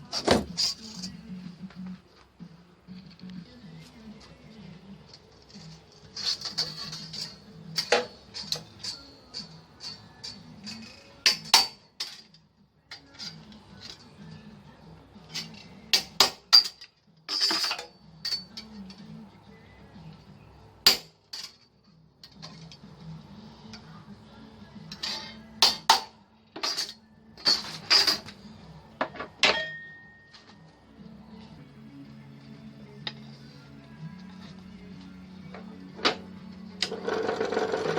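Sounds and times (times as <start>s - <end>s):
quiet background music: 0.0s - 37.9s
metallic clinks of hand tools: 16.5s - 19.1s.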